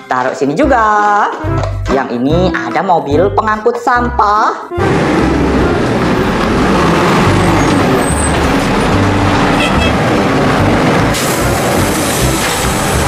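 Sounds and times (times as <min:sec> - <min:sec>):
garbage truck engine rumbling: 0:04.8 - 0:13.0.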